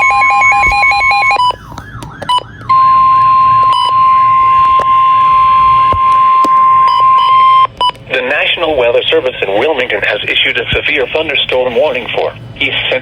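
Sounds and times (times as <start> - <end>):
loud steady alarm tone: 0.0 - 12.6
warbling alert sweep: 2.4 - 7.7
fast pulsing electronic beeps: 2.7 - 10.6.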